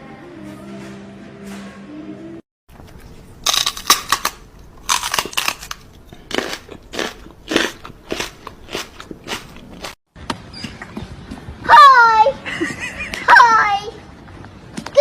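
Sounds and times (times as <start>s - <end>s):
loud crisp crunching: 2.7s - 10.0s.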